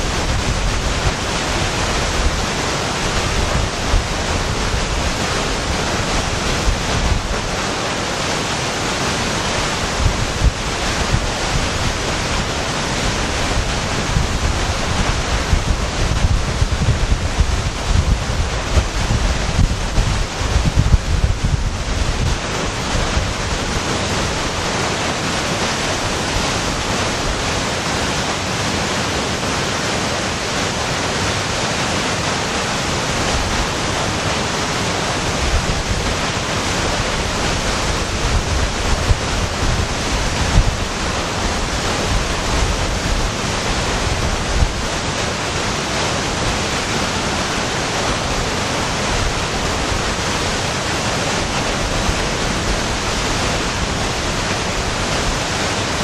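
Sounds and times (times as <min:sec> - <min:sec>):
waterfall rushing: 0:00.0 - 0:56.0
low rumbles: 0:09.7 - 0:24.7.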